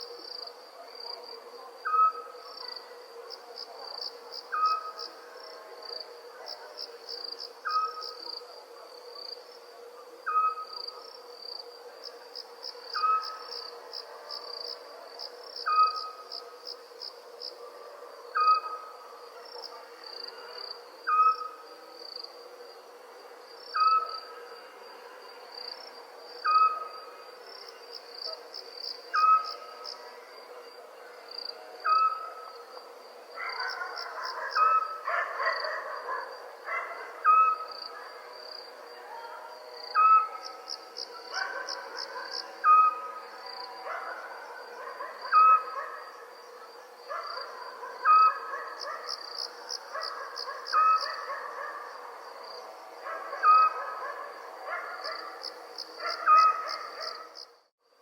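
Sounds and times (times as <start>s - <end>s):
crickets chirping: 0.0s - 58.0s
owl hooting: 13.0s - 13.4s, 21.1s - 21.6s, 37.2s - 37.7s, 40.0s - 40.4s, 42.6s - 43.2s, 45.3s - 45.8s, 50.6s - 51.2s.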